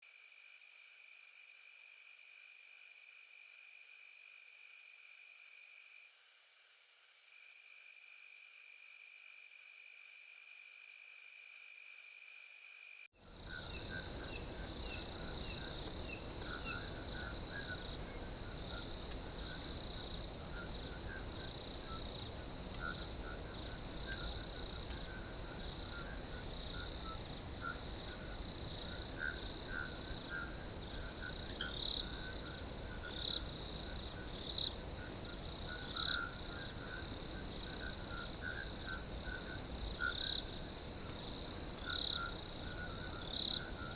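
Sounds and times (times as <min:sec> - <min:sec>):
crickets chirping: 0:00.1 - 0:43.9.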